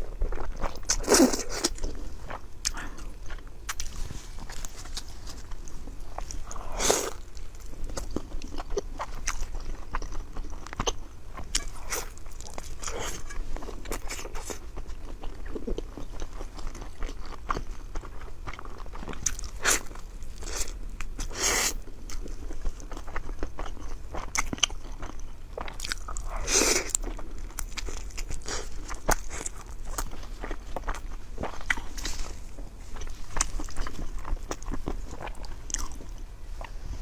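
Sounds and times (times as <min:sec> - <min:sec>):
person chewing and biting food: 0:00.0 - 0:36.8.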